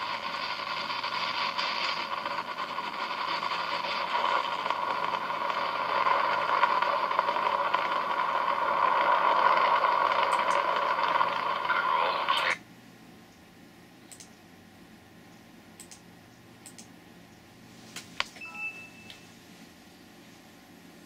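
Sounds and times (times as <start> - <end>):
steady rushing noise from laptop: 0.0 - 12.6.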